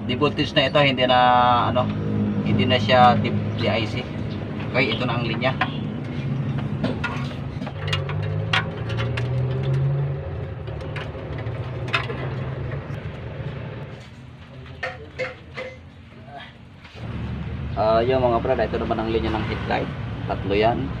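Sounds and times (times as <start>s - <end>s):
vehicle engine running: 0.2s - 15.8s
wires clicking and rustling: 4.6s - 15.9s.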